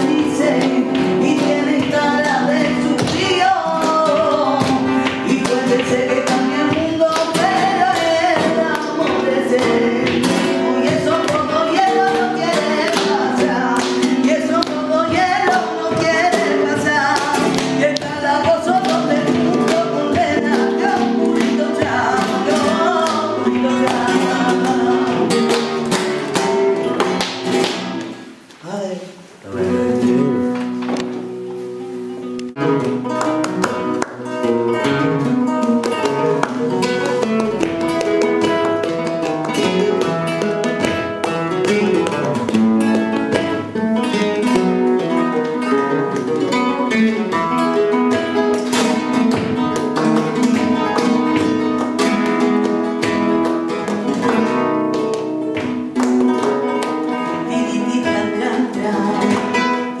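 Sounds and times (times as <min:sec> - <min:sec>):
flamenco acoustic guitar: 0:00.0 - 1:00.0.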